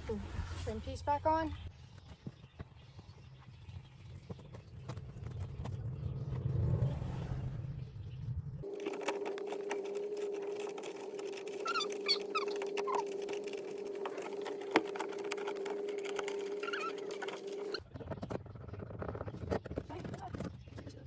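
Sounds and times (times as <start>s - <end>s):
steady hum: 7.6s - 17.8s
brief squeaks: 9.8s - 17.8s.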